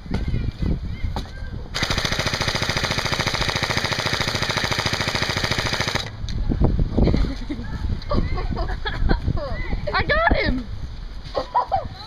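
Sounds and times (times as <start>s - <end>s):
airsoft gun full-auto burst: 1.8s - 6.1s.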